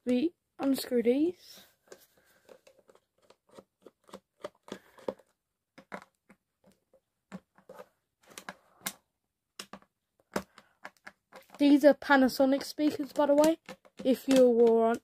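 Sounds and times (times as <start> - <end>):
screwdriver clicks and scrapes: 1.9 - 5.2.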